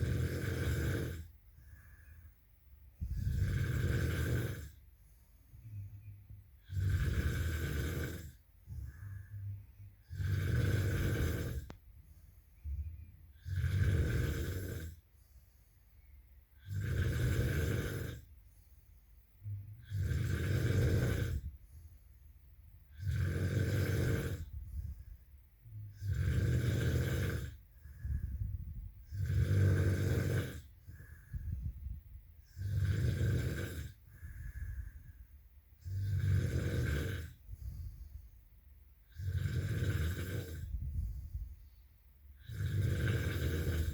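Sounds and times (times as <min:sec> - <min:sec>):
person snoring: 0:00.0 - 0:02.2, 0:03.0 - 0:04.8, 0:06.6 - 0:11.8, 0:12.6 - 0:15.4, 0:16.5 - 0:18.4, 0:19.4 - 0:21.6, 0:22.9 - 0:35.2, 0:35.8 - 0:38.2, 0:39.0 - 0:41.7, 0:42.3 - 0:43.9
faint breathing: 0:00.0 - 0:43.9.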